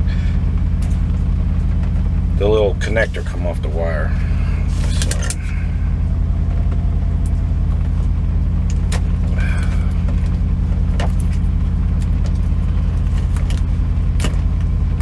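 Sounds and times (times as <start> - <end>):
diesel truck engine idling: 0.0 - 15.0.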